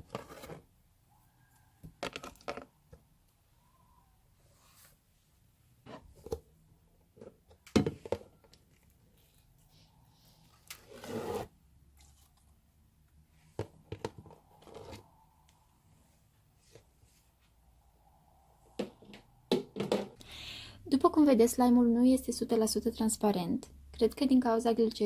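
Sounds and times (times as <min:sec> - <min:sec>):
plastic containers knocking: 0:13.5 - 0:14.8, 0:18.8 - 0:20.2.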